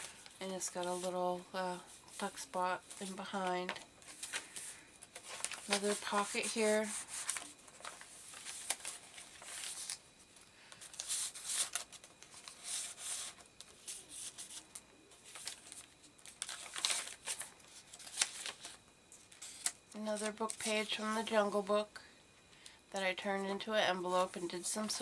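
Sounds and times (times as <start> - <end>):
paper rustling and crinkling: 0.0 - 21.4.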